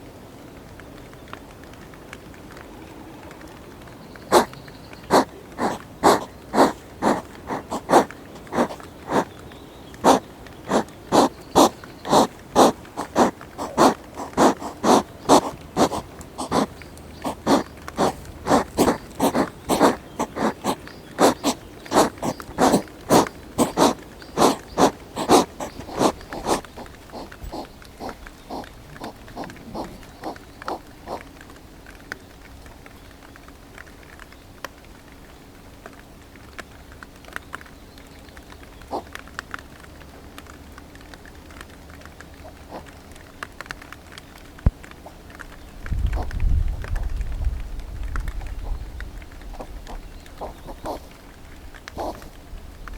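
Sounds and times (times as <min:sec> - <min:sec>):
hedgehog huffing and snorting: 0:04.2 - 0:31.4, 0:38.9 - 0:39.2, 0:42.3 - 0:43.0, 0:45.0 - 0:45.2, 0:46.1 - 0:46.4, 0:49.5 - 0:51.2, 0:51.9 - 0:52.4.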